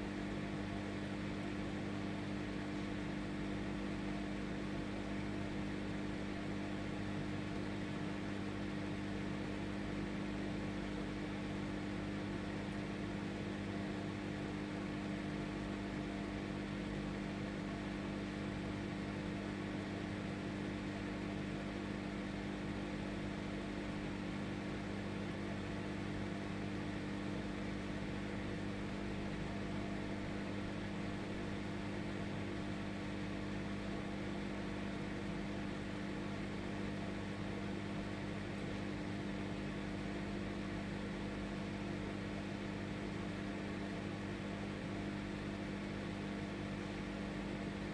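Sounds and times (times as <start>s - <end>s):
microwave oven hum: 0.0s - 47.9s.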